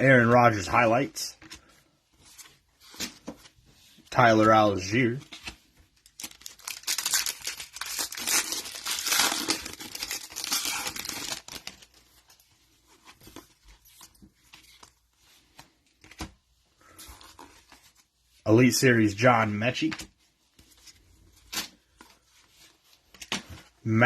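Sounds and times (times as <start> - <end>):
wrapper tearing and crumpling: 6.0 - 12.0.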